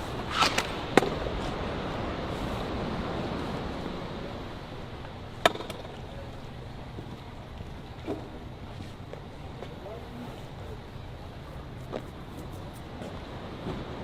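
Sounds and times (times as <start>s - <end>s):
steady background noise: 0.0s - 14.0s
sharp cracks: 0.2s - 1.4s.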